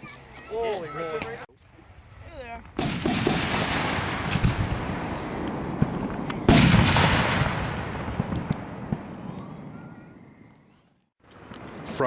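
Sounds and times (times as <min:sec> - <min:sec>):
fireworks crackling: 0:01.6 - 0:12.0
fireworks boom: 0:02.7 - 0:09.9.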